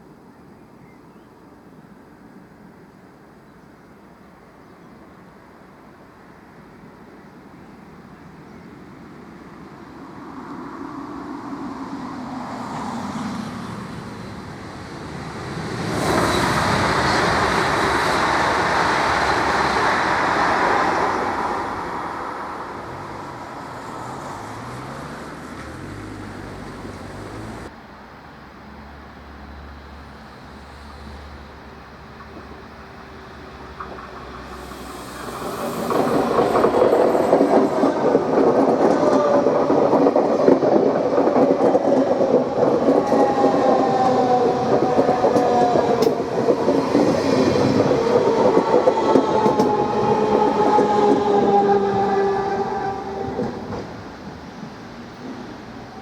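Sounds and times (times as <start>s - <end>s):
vehicle passing by: 23.0s - 27.7s.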